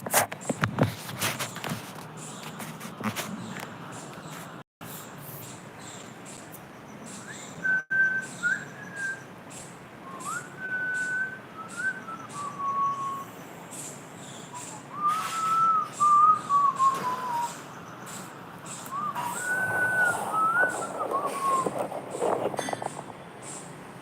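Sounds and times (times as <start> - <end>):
person whistling a tune: 10.1 - 13.3, 14.8 - 17.6, 18.9 - 21.7
light clicks and rustles: 18.8 - 23.2.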